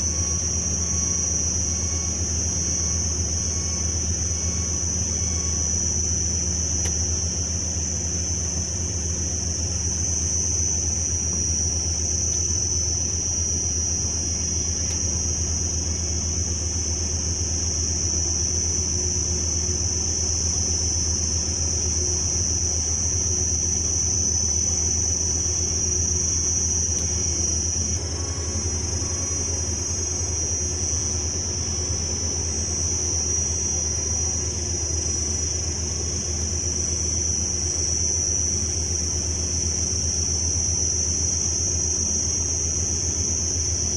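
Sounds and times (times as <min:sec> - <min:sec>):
excavator diesel engine droning: 0:00.0 - 0:39.8.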